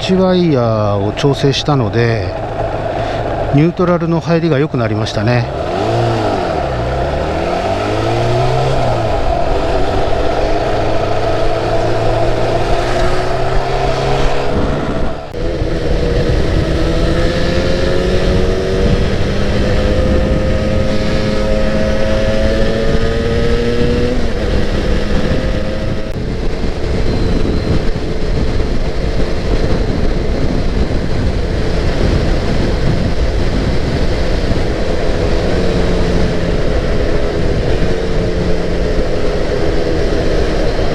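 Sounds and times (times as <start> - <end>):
two-stroke motorcycle engine running: 15.3 - 40.9.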